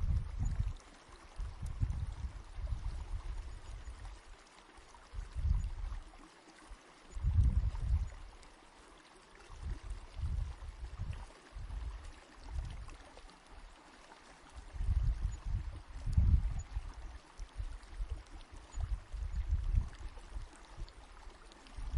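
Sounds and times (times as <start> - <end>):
running water with deep surges: 0.0 - 21.9.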